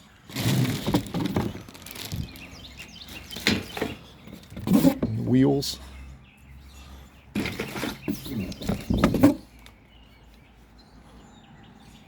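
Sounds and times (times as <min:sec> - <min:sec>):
faint birds chirping: 0:00.0 - 0:12.0
packaging rustling and knocking: 0:00.3 - 0:02.4.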